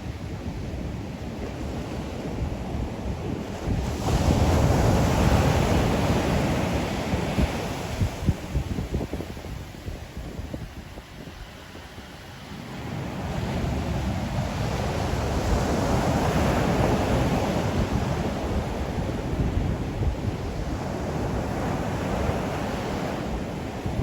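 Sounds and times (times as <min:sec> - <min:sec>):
wind rumbling on microphone: 0:00.0 - 0:24.0.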